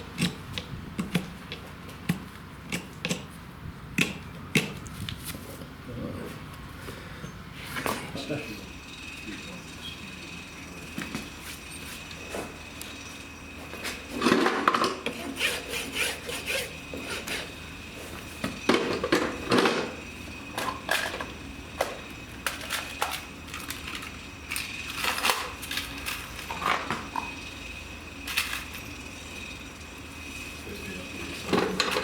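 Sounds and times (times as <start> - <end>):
hand tools scraping a hoof: 0.0 - 3.4, 4.0 - 5.7, 13.7 - 20.0.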